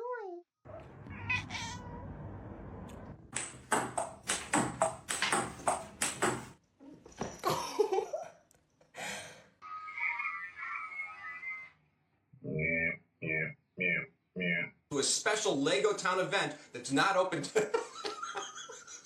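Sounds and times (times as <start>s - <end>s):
sharp knocks with faint ringing: 3.4s - 6.5s.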